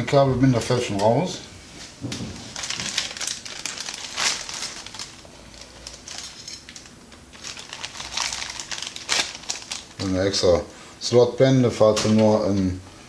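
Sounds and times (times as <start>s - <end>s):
plastic bag crinkling: 1.8s - 10.6s, 11.7s - 12.8s.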